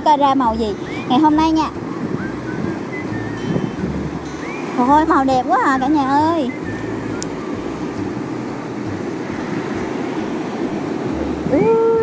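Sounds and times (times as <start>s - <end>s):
sea surf: 0.0s - 12.0s
wind blowing over microphone: 0.0s - 12.0s.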